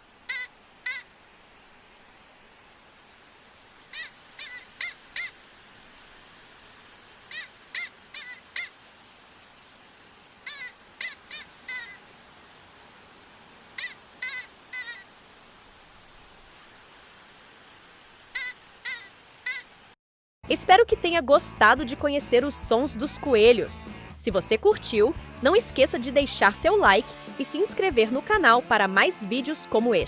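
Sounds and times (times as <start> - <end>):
faint steady hiss: 0.0 - 20.0
animal short high calls: 0.2 - 1.1, 3.9 - 5.4, 7.3 - 8.8, 10.4 - 12.0, 13.7 - 15.1, 18.3 - 19.7.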